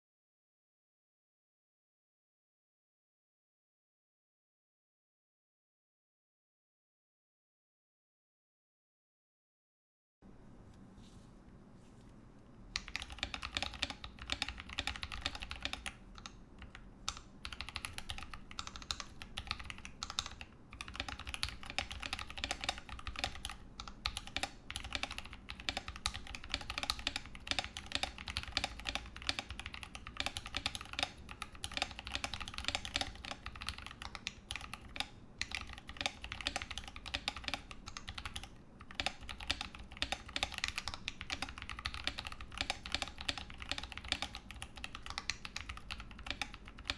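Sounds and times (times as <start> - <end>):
fast typing on mechanical keyboard: 12.8 - 46.9.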